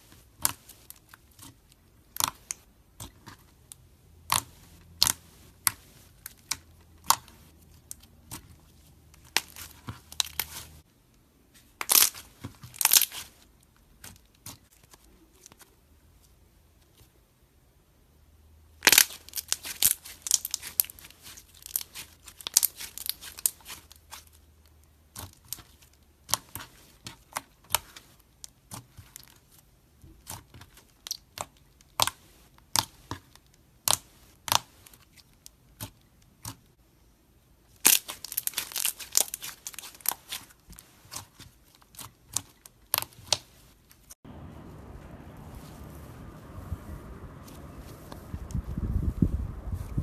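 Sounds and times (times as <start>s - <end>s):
slime crackling and popping: 9.2s - 10.6s, 11.8s - 13.3s, 18.8s - 24.4s, 37.8s - 43.5s.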